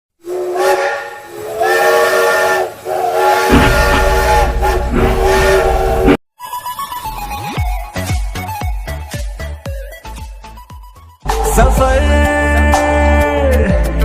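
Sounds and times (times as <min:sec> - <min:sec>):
train whistle chord: 0:00.2 - 0:06.2
low rumble: 0:03.5 - 0:06.2.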